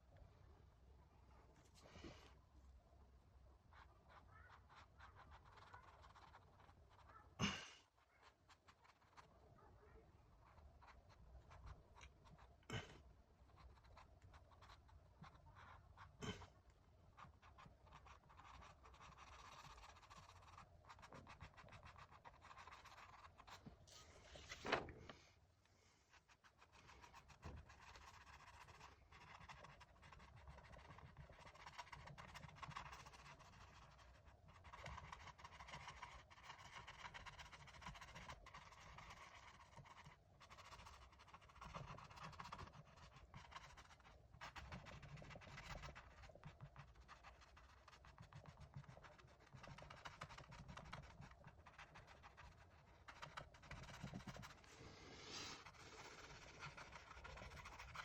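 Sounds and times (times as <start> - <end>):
paintbrush scratching on canvas: 3.7 - 7.2, 13.5 - 24.2, 26.1 - 58.0.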